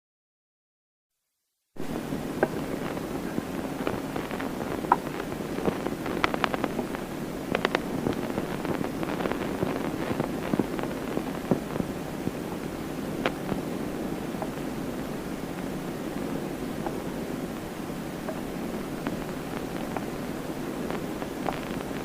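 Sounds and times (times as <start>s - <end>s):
crackles and pops: 1.8s - 22.0s
telephone line hiss: 1.8s - 22.0s.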